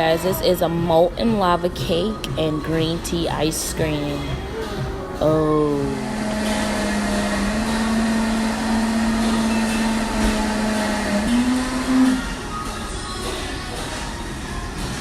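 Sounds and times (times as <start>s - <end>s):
steady background hum: 0.0s - 15.0s
woman humming mmm: 4.0s - 9.4s.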